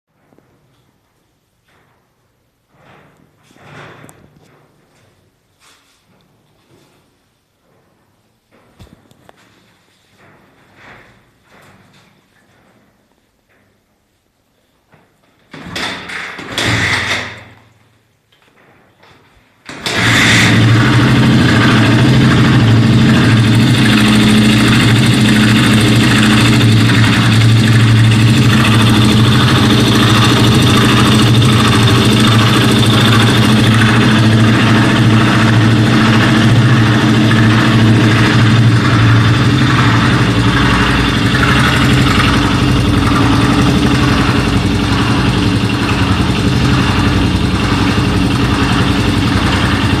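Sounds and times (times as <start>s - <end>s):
regular engine tick: 19.9s - 50.0s
motorcycle engine idling: 20.4s - 50.0s.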